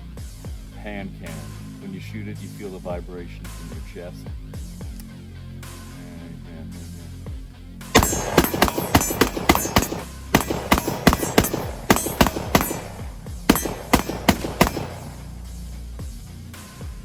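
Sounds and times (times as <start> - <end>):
background music with steady beat: 0.0 - 17.0
rapid gunshots: 8.0 - 16.0.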